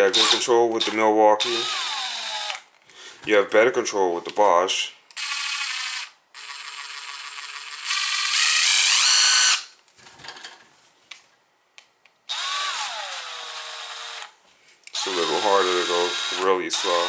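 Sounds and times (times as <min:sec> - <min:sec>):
impact wrench whining: 0:05.2 - 0:09.7, 0:12.2 - 0:14.3, 0:15.0 - 0:17.0.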